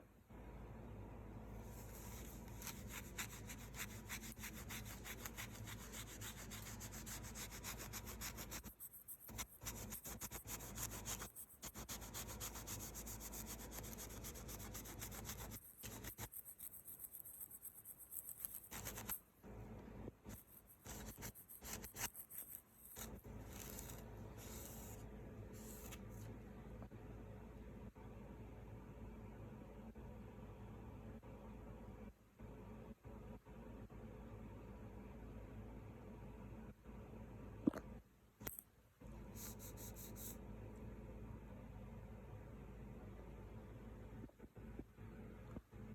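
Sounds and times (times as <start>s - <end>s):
rubbing on wooden cutting board: 1.8s - 19.2s.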